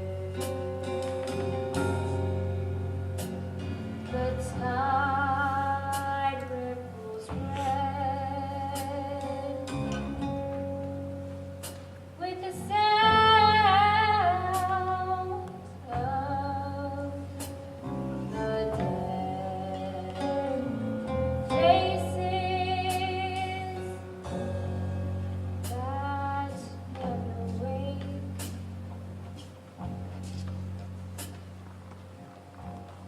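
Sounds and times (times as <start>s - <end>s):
woman singing: 0.0s - 1.2s, 4.0s - 10.3s, 12.2s - 17.6s, 18.2s - 24.2s, 25.6s - 28.7s
instrumental accompaniment: 0.0s - 33.0s.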